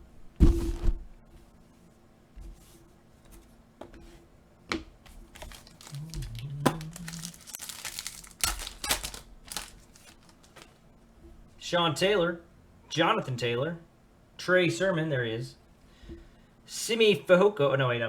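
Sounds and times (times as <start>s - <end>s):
foil wrapper tearing and crinkling: 5.1s - 10.8s.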